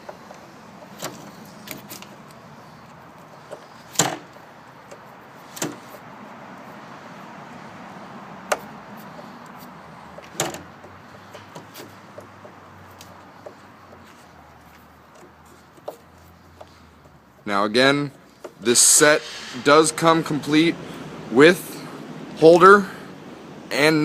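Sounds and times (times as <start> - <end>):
sharp knocks and clicks: 8.4 - 9.3, 10.1 - 17.2
steady low hiss: 17.2 - 24.0.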